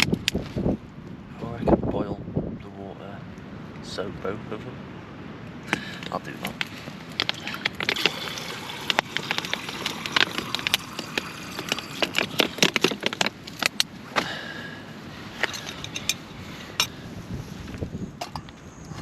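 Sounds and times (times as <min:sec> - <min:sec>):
cooking gear clicking and rattling: 0:07.1 - 0:13.9.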